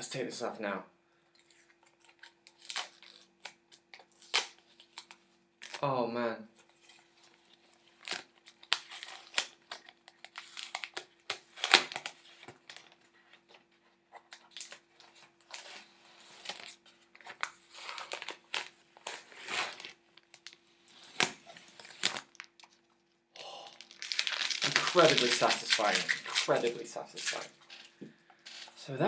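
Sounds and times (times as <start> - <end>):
plastic film peeling and crinkling: 1.4 - 5.8, 6.6 - 27.9.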